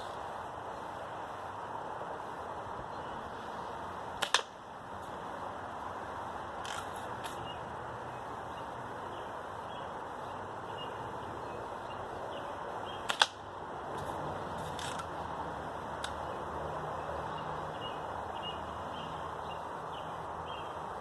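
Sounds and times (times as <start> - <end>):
background hiss: 0.0 - 21.0
bb gun crack: 4.2 - 4.6, 13.0 - 13.4.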